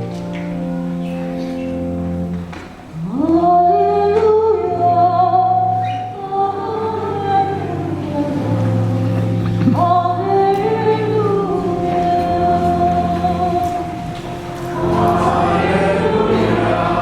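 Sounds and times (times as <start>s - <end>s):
church organ chords: 0.0s - 17.0s
voices singing a hymn: 2.9s - 17.0s.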